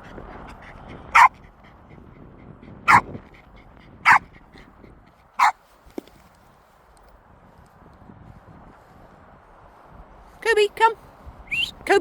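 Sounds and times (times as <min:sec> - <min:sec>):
small dog barking: 0:01.1 - 0:01.3, 0:04.0 - 0:04.2, 0:05.4 - 0:05.6.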